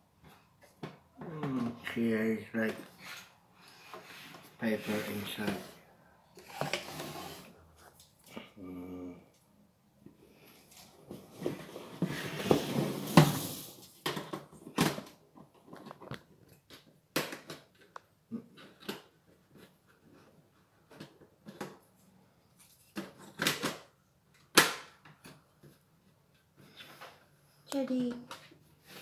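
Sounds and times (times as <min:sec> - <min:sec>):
plastic parts clicking and knocking: 0:14.0 - 0:19.2.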